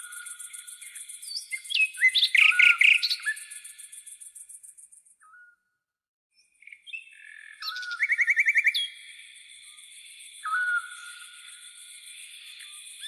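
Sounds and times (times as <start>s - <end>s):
birds chirping and whistling: 0.0s - 5.5s, 6.4s - 13.0s
cricket trill: 7.6s - 13.0s.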